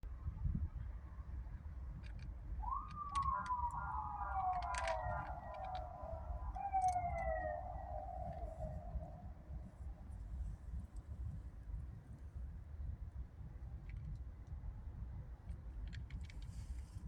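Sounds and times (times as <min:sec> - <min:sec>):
sharp clicks: 0:02.0 - 0:08.8
siren wailing: 0:02.6 - 0:10.1
low rumble: 0:02.6 - 0:10.4.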